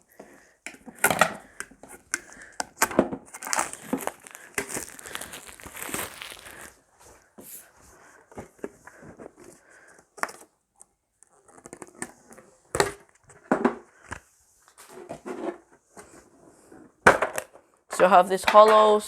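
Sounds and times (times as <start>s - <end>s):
packaging and cards crinkling: 2.0s - 7.2s.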